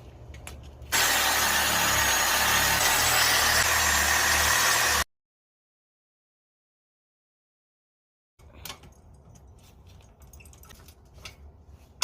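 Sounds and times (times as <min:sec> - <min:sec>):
power tool running: 0:00.9 - 0:05.1.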